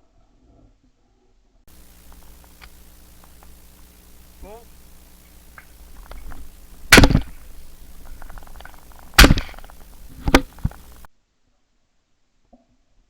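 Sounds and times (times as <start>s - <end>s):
loud shotgun shots: 1.7s - 11.1s.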